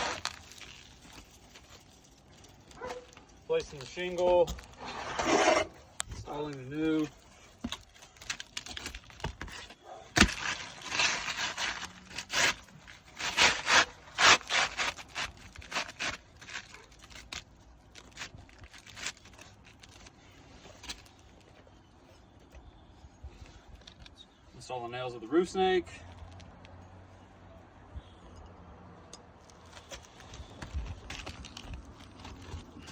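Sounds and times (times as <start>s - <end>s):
roof shingle scraping: 0.0s - 21.2s.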